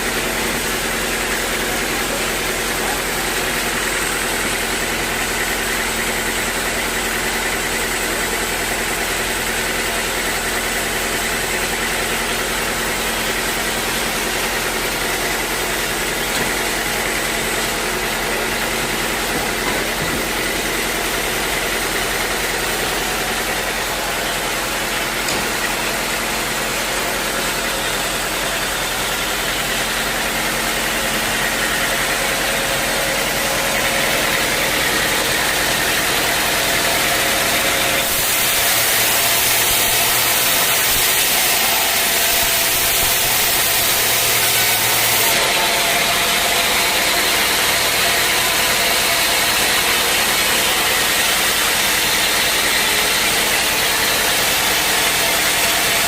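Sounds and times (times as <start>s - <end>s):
sawmill machinery humming: 0.0s - 56.0s.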